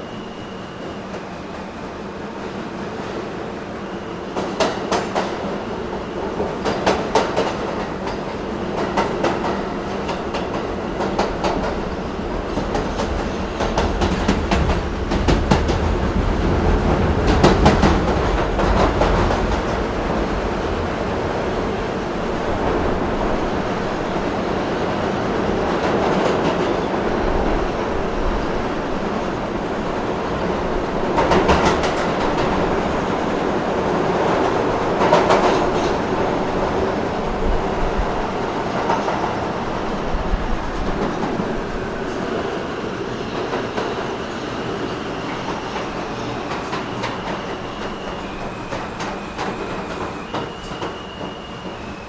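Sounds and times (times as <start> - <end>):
subway train rumble: 0.0 - 52.0
high wheel squeal: 46.2 - 52.0.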